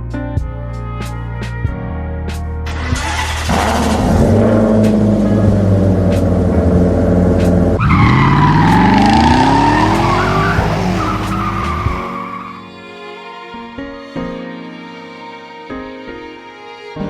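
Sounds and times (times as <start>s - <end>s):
soft music: 0.0s - 17.0s
race car engine revving: 2.7s - 12.4s
tires screeching: 2.7s - 12.7s.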